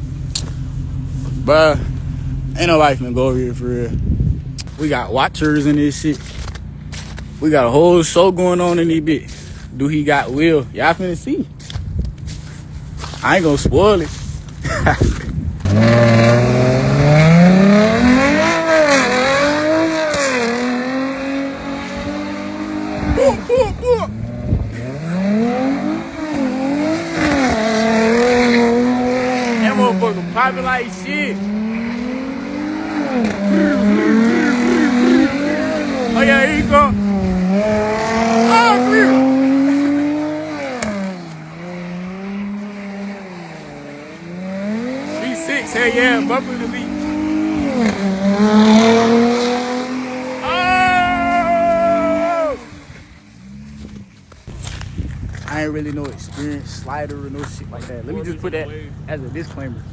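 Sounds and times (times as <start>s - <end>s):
car engine revving hard: 0.0s - 11.2s, 12.3s - 54.8s.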